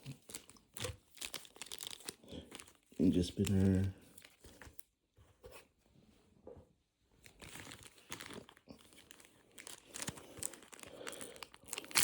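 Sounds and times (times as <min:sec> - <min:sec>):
foil wrapper crinkling: 0:00.0 - 0:04.8, 0:07.2 - 0:12.0.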